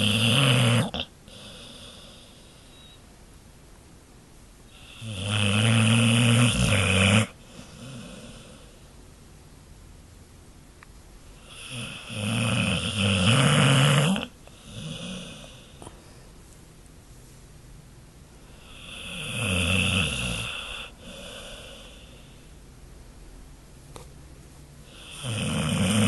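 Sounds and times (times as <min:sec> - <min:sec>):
dog snoring: 0:00.0 - 0:02.7, 0:04.7 - 0:08.8, 0:11.3 - 0:15.9, 0:18.5 - 0:22.4, 0:24.8 - 0:26.0.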